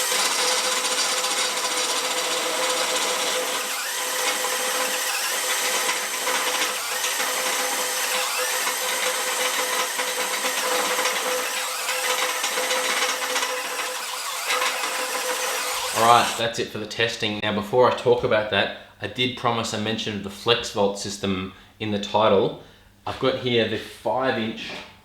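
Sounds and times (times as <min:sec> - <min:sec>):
hammer drill running: 0:00.0 - 0:16.4.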